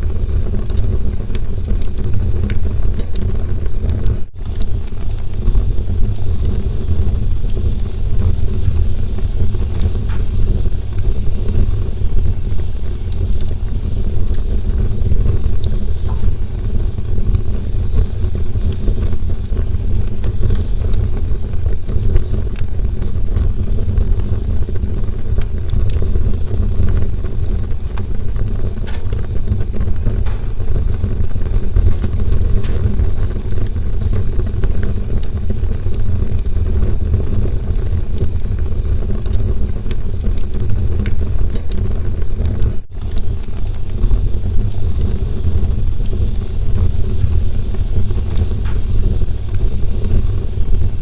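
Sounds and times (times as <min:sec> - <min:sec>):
burning wood crackling and popping: 0:00.0 - 0:51.0
campfire flames roaring: 0:00.0 - 0:51.0.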